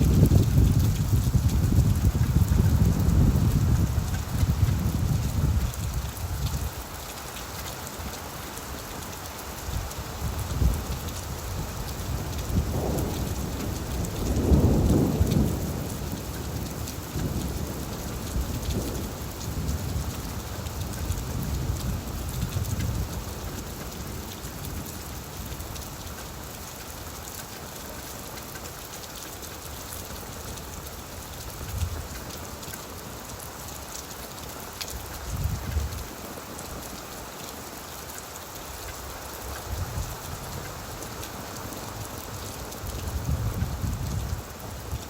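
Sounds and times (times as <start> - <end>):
thunder rumbling: 0.0 - 6.0, 12.0 - 20.1
rain falling on leaves: 0.0 - 45.0.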